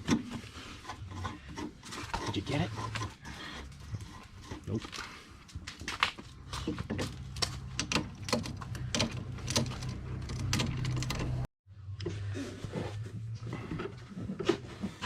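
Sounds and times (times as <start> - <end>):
metal parts and tools clicking: 6.5 - 11.5.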